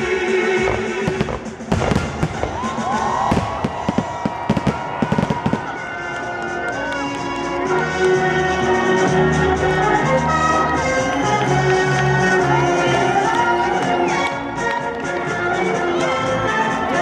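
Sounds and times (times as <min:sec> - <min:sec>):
music playing: 0:00.0 - 0:17.0
fireworks bangs and crackles: 0:00.4 - 0:07.9.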